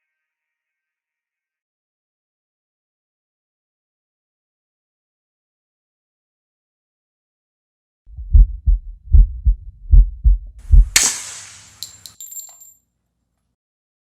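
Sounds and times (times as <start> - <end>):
heartbeat thumps: 8.1 - 11.0
sharp hit with ringing tail: 10.9 - 11.8.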